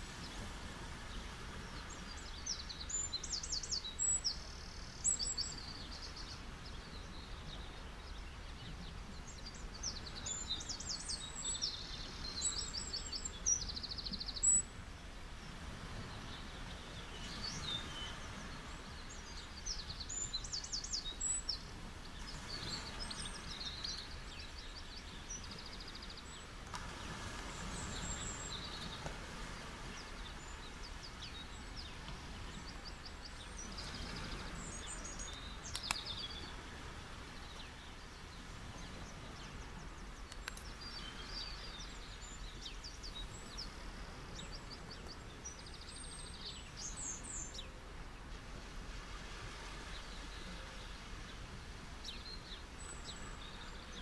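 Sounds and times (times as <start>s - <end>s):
ocean waves washing on beach: 0.0s - 54.0s
small birds chirping: 1.2s - 29.1s, 29.8s - 47.8s
sharp tick: 35.3s - 36.1s, 40.3s - 40.7s.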